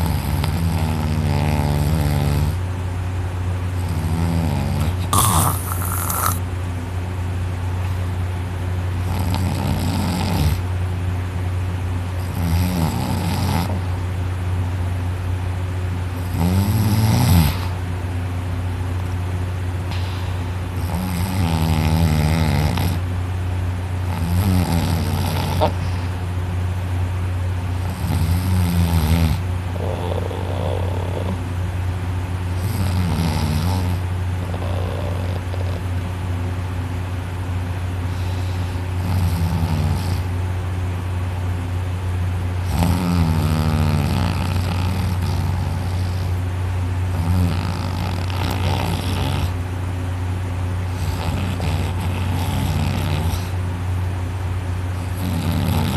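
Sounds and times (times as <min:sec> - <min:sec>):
person snoring heavily: 0:00.0 - 0:02.6, 0:03.8 - 0:06.4, 0:09.0 - 0:10.6, 0:12.2 - 0:13.8, 0:16.2 - 0:17.8, 0:19.9 - 0:23.0, 0:24.0 - 0:26.2, 0:27.8 - 0:31.4, 0:32.6 - 0:36.1, 0:38.0 - 0:40.3, 0:42.6 - 0:46.4, 0:47.1 - 0:49.6, 0:50.9 - 0:53.6, 0:55.0 - 0:55.9
steady low hum: 0:00.0 - 0:55.9.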